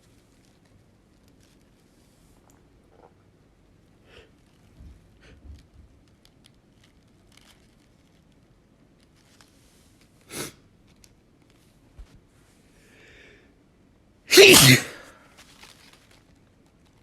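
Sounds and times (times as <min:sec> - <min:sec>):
faint small noises: 0:00.0 - 0:17.0
person sneezing: 0:14.3 - 0:15.2.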